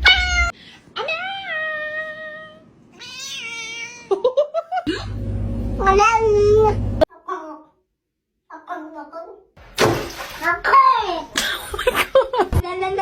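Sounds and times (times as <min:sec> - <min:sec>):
cat meowing: 0:03.0 - 0:04.1
steady low hum: 0:04.9 - 0:07.1.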